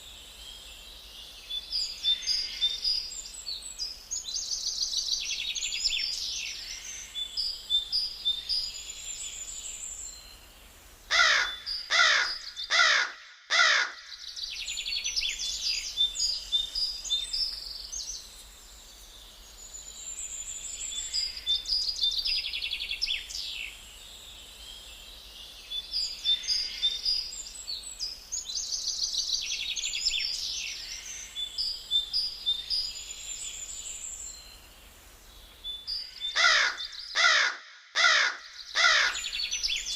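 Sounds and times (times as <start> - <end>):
songbirds chirping: 0.0 - 39.9
crow cawing: 11.1 - 14.1, 36.4 - 39.2.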